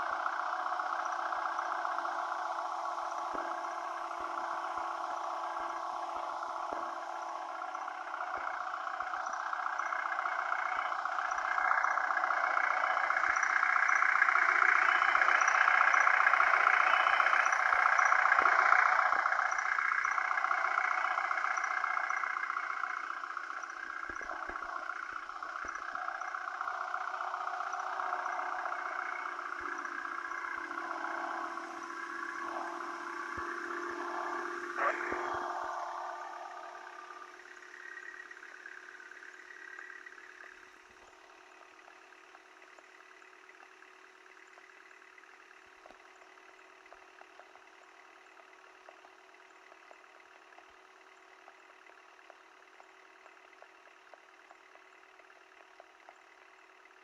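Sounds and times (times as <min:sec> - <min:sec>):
engine revving under load: 0:00.0 - 0:38.3.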